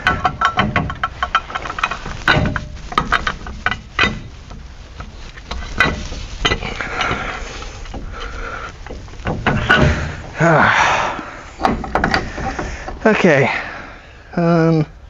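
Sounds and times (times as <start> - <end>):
metal tools knocking and clinking: 0.0 - 10.3.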